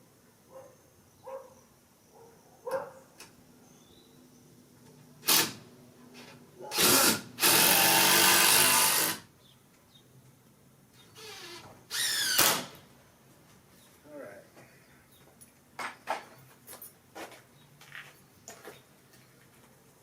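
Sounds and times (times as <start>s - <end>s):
power drill running: 5.2s - 5.6s, 6.7s - 9.2s, 11.2s - 12.7s.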